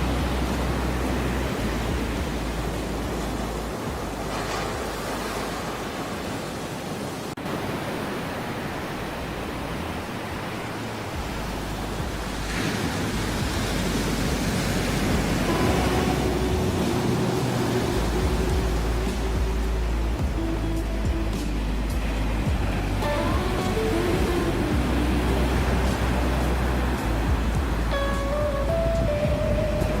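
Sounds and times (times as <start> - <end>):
ocean waves breaking: 0.0 - 30.0
faint held musical tones: 13.2 - 30.0.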